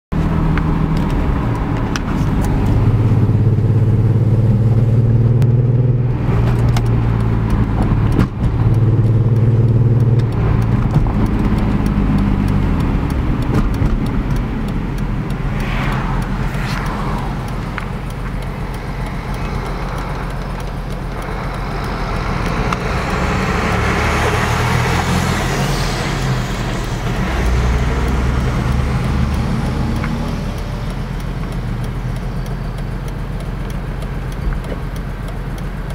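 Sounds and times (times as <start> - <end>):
misfiring car engine drone: 0.1 - 35.9
brief sweeping sounds: 15.4 - 18.3.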